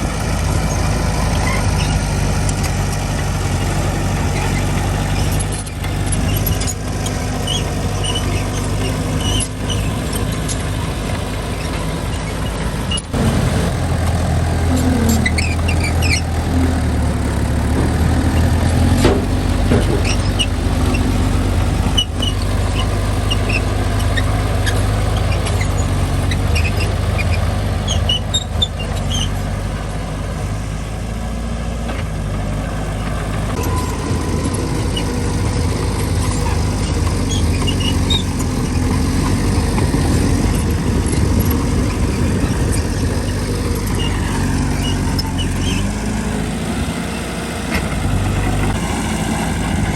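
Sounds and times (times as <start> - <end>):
bulldozer diesel engine running: 0.0 - 49.9
short high squeaks: 0.6 - 2.8, 4.2 - 10.6, 14.7 - 16.9, 18.3 - 29.5, 33.5 - 46.1.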